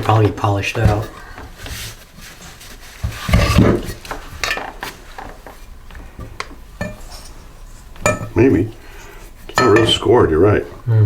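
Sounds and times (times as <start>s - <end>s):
metal engine parts clinking: 8.0s - 8.7s, 9.5s - 10.3s.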